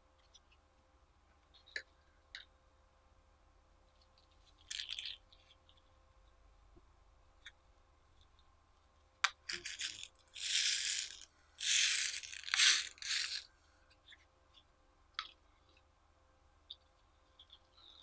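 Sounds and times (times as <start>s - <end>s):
small hard pieces rattling: 4.7s - 5.2s, 9.3s - 13.4s.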